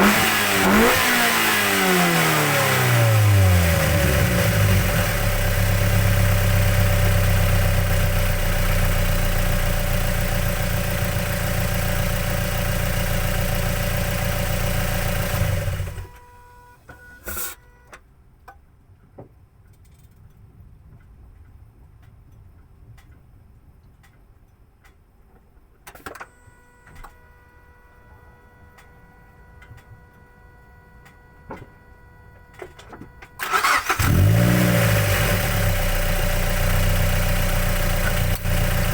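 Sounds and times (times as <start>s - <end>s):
car engine idling: 0.0s - 16.2s, 30.7s - 38.9s
car engine starting: 0.0s - 16.4s, 28.4s - 38.9s.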